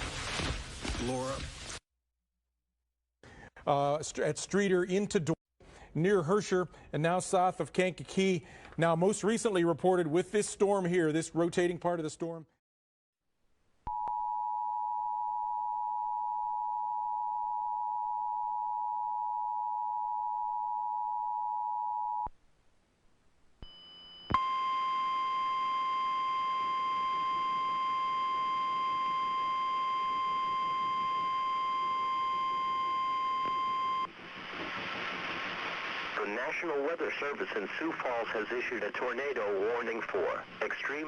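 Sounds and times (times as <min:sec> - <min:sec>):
radio static: 0:34.1 - 0:41.0.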